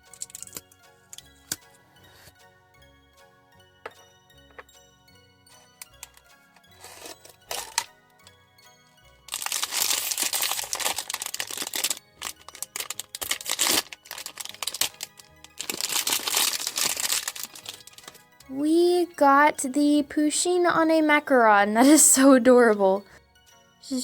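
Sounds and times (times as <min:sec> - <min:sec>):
packaging crinkling: 0:00.0 - 0:00.6, 0:06.8 - 0:07.9, 0:09.3 - 0:18.2
soft background music: 0:00.0 - 0:24.0.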